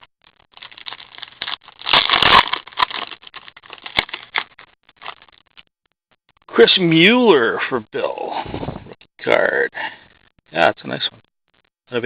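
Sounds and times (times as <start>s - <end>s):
card pack crinkling and scraping: 0.3s - 5.4s.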